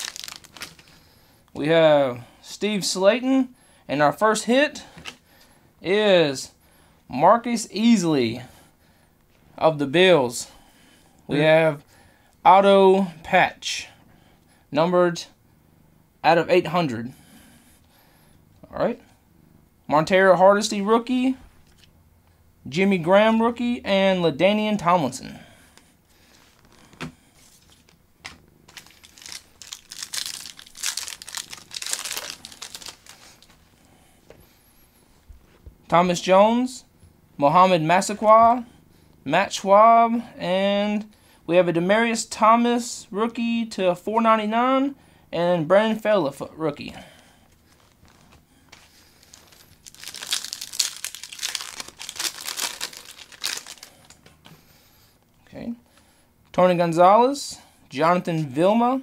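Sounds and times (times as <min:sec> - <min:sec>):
wrapper tearing and crinkling: 0:00.0 - 0:01.0, 0:28.7 - 0:33.6, 0:49.2 - 0:54.2.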